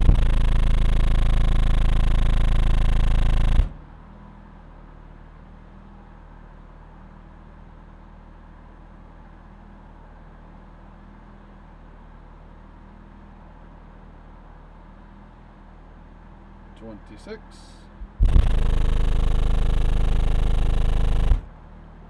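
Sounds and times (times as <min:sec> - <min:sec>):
low steady hum: 0:00.0 - 0:03.8, 0:18.0 - 0:21.5
low sine tone through subwoofer: 0:00.0 - 0:04.0, 0:18.0 - 0:21.5.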